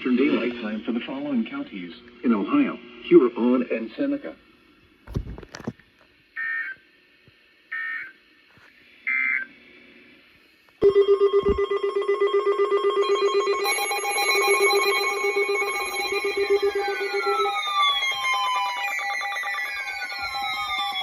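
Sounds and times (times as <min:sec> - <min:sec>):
pulsing electronic alarm tone: 0:10.8 - 0:21.0
digital data tone bursts: 0:12.5 - 0:21.0.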